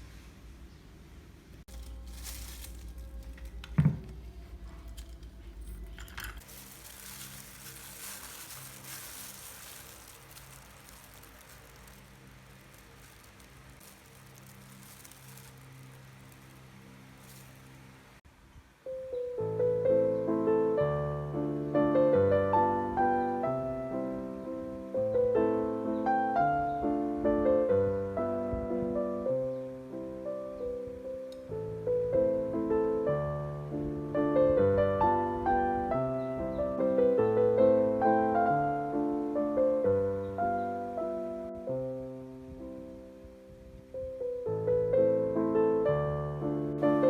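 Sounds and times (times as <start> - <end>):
gentle piano music: 1.6 - 47.0
hot food sizzling: 6.4 - 18.2.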